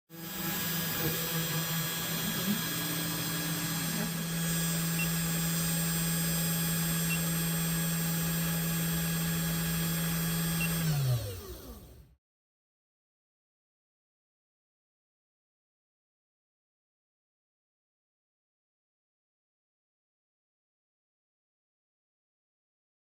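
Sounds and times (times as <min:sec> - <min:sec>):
spindle motor whine: 0:00.1 - 0:12.1
stepper motor tones: 0:00.1 - 0:12.1.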